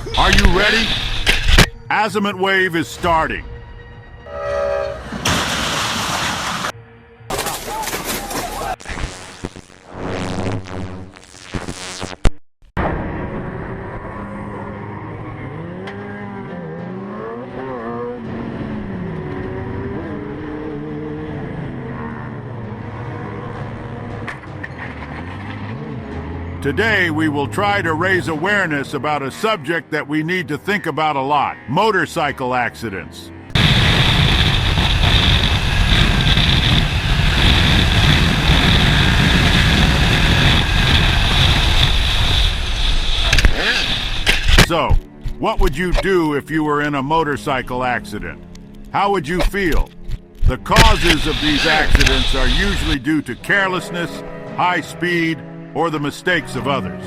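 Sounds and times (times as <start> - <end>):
vehicle engine revving: 13.4 - 28.4, 33.5 - 44.5.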